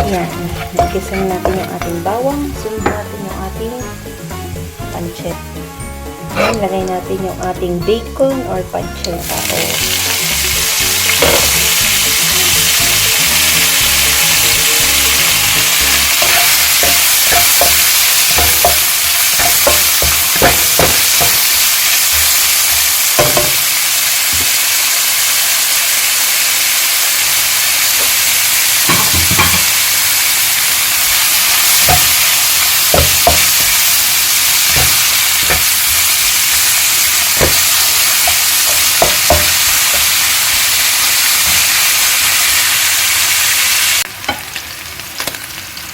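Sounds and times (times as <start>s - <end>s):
spatula scraping a pan: 0.0s - 1.9s, 6.3s - 6.7s, 15.0s - 22.2s
bacon sizzling in a frying pan: 0.0s - 3.0s, 9.1s - 45.9s.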